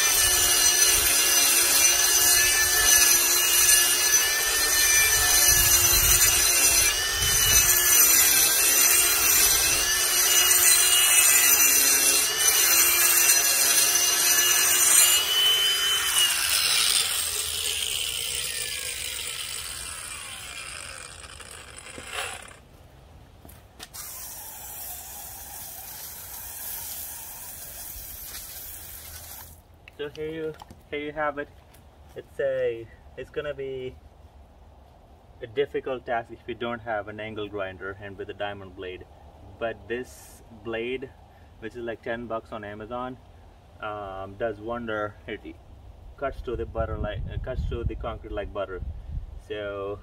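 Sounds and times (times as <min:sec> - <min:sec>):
angle grinder grinding concrete: 0:00.0 - 0:22.7, 0:23.8 - 0:29.6
blade spinning down: 0:14.8 - 0:22.6, 0:23.9 - 0:28.8.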